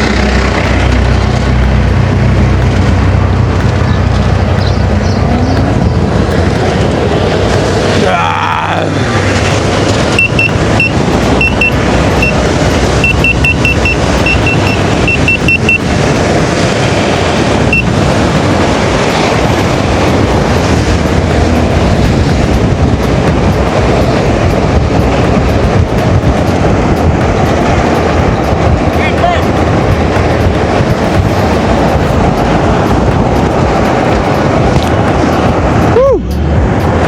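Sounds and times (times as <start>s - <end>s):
heavy wind on microphone: 0.0s - 37.0s
high-pitched alarm beeps: 10.1s - 15.9s, 17.7s - 18.0s.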